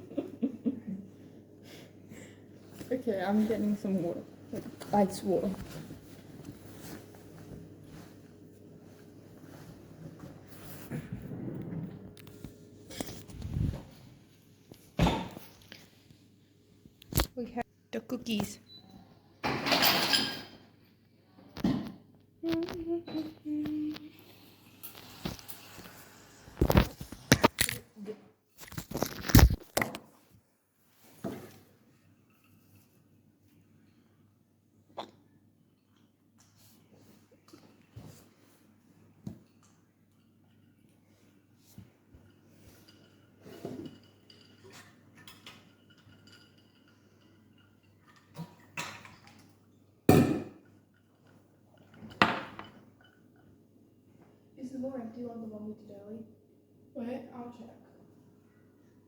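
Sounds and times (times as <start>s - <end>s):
kitchen items clattering: 19.4s - 20.7s, 42.3s - 49.4s.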